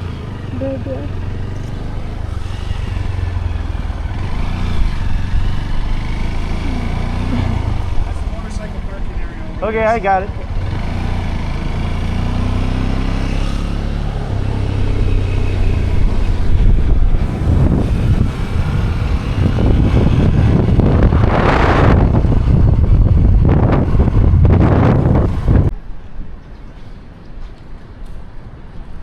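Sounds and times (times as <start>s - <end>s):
motorcycle engine running: 0.0s - 25.7s
wind buffeting microphone: 14.1s - 26.4s.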